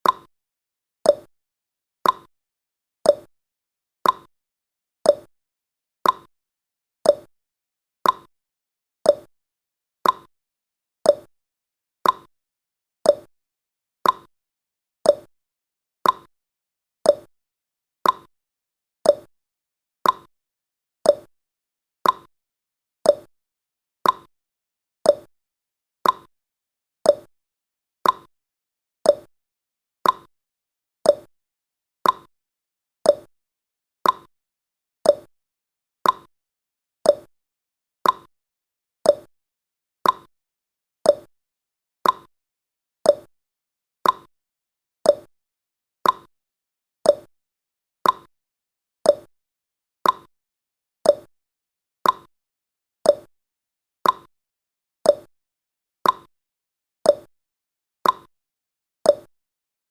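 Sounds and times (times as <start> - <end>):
timer ticking: 0.0 - 0.3, 1.1 - 1.3, 2.0 - 2.3, 3.1 - 3.3, 4.0 - 4.3, 5.1 - 5.3, 6.0 - 6.3, 7.1 - 7.3, 8.0 - 8.3, 9.1 - 9.3, 10.0 - 10.3, 11.1 - 11.3, 12.0 - 12.3, 13.1 - 13.3, 14.0 - 14.3, 15.1 - 15.3, 16.0 - 16.3, 17.1 - 17.3, 18.0 - 18.3, 19.1 - 19.3, 20.0 - 20.3, 21.1 - 21.3, 22.0 - 22.3, 23.1 - 23.3, 24.0 - 24.3, 25.1 - 25.3, 26.0 - 26.3, 27.1 - 27.3, 28.0 - 28.3, 29.1 - 29.3, 30.0 - 30.3, 31.1 - 31.3, 32.0 - 32.3, 33.1 - 33.3, 34.0 - 34.3, 35.0 - 35.3, 36.0 - 36.3, 37.1 - 37.3, 38.0 - 38.3, 39.1 - 39.3, 40.0 - 40.3, 41.1 - 41.3, 42.0 - 42.3, 43.1 - 43.3, 44.0 - 44.3, 45.1 - 45.3, 46.0 - 46.3, 47.1 - 47.3, 48.0 - 48.3, 49.1 - 49.3, 50.0 - 50.3, 51.1 - 51.3, 52.0 - 52.3, 53.1 - 53.3, 54.0 - 54.3, 55.1 - 55.3, 56.0 - 56.3, 57.1 - 57.3, 58.0 - 58.3, 59.1 - 59.3.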